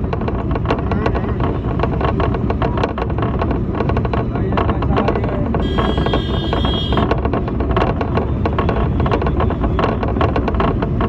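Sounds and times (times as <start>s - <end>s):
bus clattering and rattling: 0.0s - 11.0s
bus horn: 5.6s - 7.1s.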